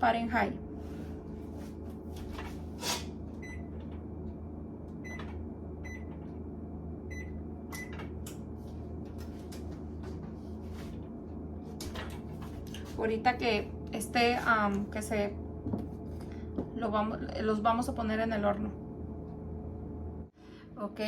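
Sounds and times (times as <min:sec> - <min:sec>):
electrical hum: 0:00.0 - 0:21.0
oven control panel beeps: 0:03.4 - 0:03.7, 0:05.0 - 0:06.2, 0:07.1 - 0:08.1.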